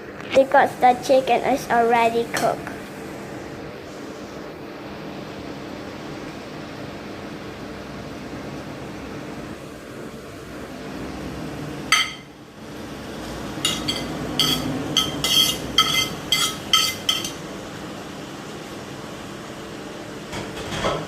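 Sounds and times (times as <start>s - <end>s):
utensil clinking against cookware: 11.9s - 12.3s, 13.6s - 17.4s.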